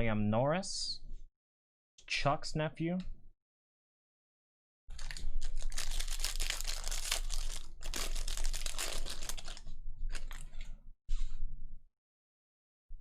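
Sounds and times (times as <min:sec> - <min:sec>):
foil wrapper crinkling: 0:04.9 - 0:10.7.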